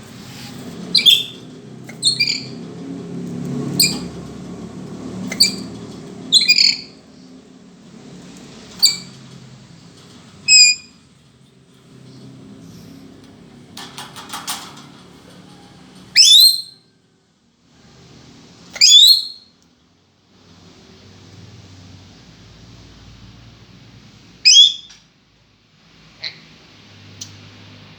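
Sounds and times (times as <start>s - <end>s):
parrot calling: 0.9s - 2.6s, 6.3s - 7.0s
parrot rising whistled calls: 16.2s - 16.8s.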